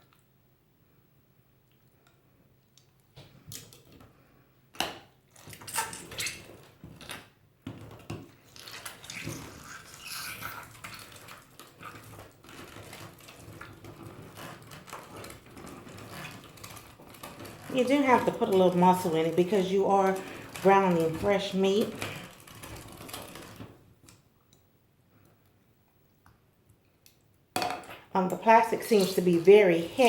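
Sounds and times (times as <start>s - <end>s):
meat grinder squelching: 8.4s - 23.5s.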